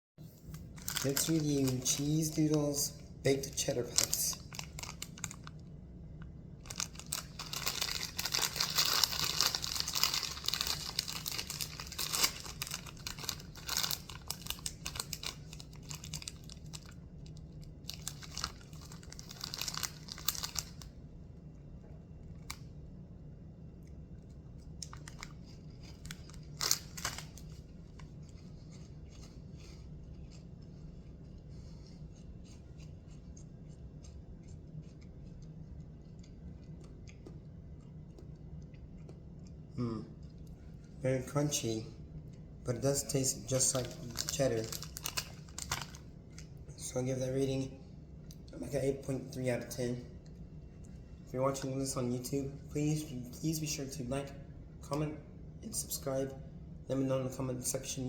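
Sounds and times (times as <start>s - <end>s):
plastic snack bag crinkling: 0.5s - 5.6s, 6.6s - 20.9s, 24.7s - 30.4s, 43.0s - 47.0s
chewing crunchy snacks: 0.6s - 2.8s, 3.4s - 20.9s, 23.8s - 41.0s, 43.6s - 46.7s.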